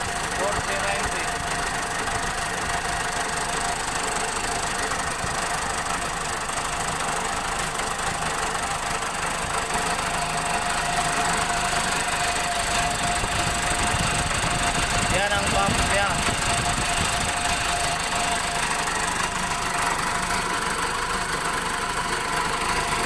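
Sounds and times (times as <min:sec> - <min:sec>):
diesel engine clattering: 0:00.0 - 0:23.0.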